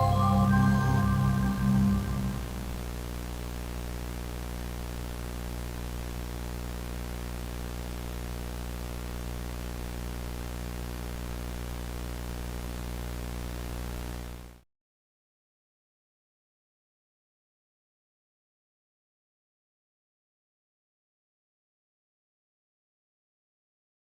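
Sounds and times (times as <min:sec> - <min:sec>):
low electrical hum: 0:00.0 - 0:14.6
static hiss: 0:00.0 - 0:14.6.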